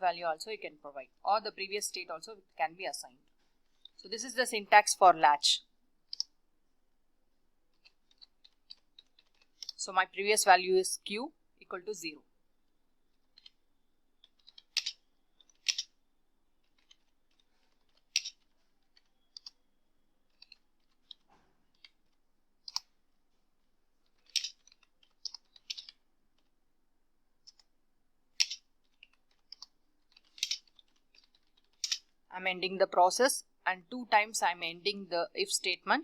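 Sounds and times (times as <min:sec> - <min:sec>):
keyboard typing: 0:14.2 - 0:16.0, 0:16.6 - 0:19.6, 0:20.2 - 0:23.0, 0:24.0 - 0:26.5, 0:28.4 - 0:32.8.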